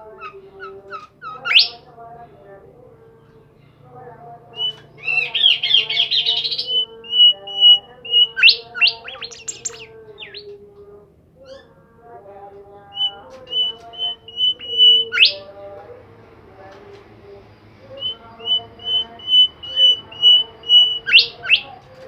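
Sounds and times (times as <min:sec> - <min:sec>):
caged songbird singing: 0:00.1 - 0:01.9, 0:04.5 - 0:10.6, 0:12.9 - 0:15.6, 0:17.6 - 0:22.0.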